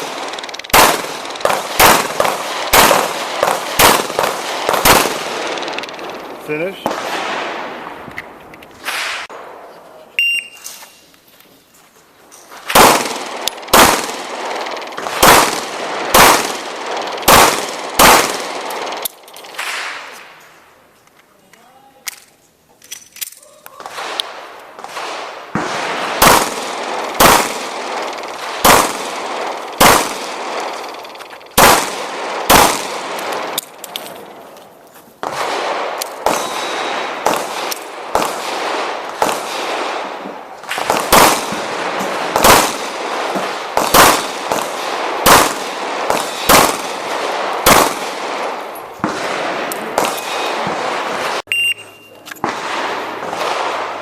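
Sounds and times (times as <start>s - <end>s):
handgun shots: 0.0s - 6.0s, 12.8s - 20.0s, 26.2s - 31.0s, 31.6s - 34.2s, 43.8s - 47.0s, 47.6s - 48.1s.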